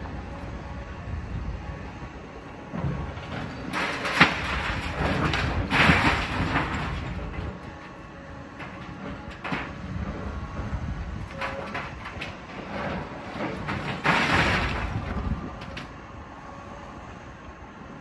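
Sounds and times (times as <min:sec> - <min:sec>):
machinery rumble: 0:00.0 - 0:18.0
debris crashing and scraping: 0:02.8 - 0:10.3, 0:11.2 - 0:15.9.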